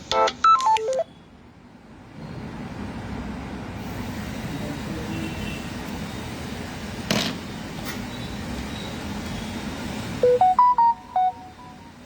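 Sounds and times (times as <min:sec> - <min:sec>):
electronic beeps tune: 0:10.2 - 0:12.0.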